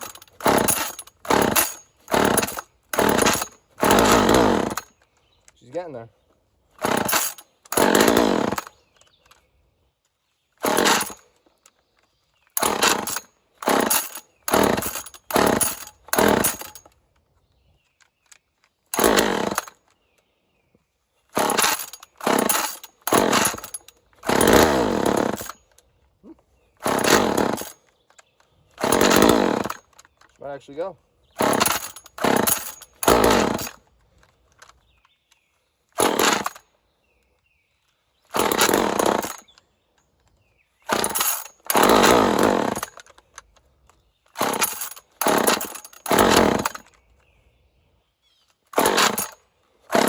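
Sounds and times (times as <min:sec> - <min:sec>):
chainsaw engine sputtering on pull-start: 0:00.0 - 0:05.1, 0:06.8 - 0:09.4, 0:10.6 - 0:11.7, 0:12.6 - 0:17.0, 0:18.0 - 0:19.9, 0:21.3 - 0:25.8, 0:26.8 - 0:30.4, 0:31.3 - 0:34.8, 0:36.0 - 0:36.7, 0:38.3 - 0:39.6, 0:40.8 - 0:47.1, 0:48.6 - 0:50.0.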